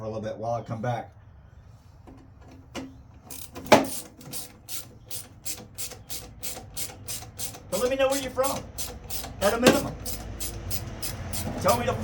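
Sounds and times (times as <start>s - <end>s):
ratchet wrench clicking: 3.3s - 12.0s.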